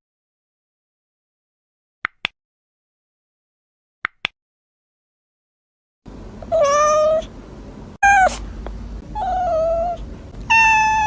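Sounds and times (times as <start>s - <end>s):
cat meowing: 6.5s - 7.3s, 8.0s - 8.4s, 9.1s - 11.0s.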